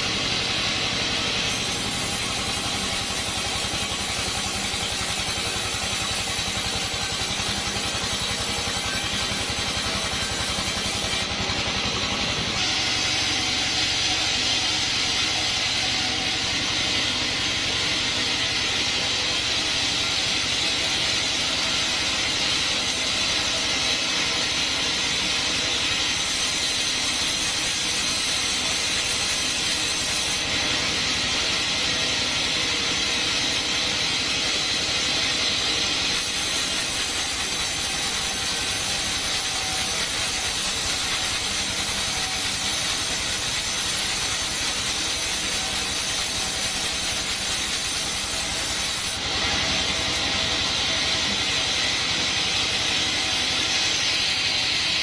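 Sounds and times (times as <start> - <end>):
machine motor hum: 0.0 - 23.5, 44.9 - 55.0
band saw blade rasping: 1.2 - 30.6, 31.5 - 55.0.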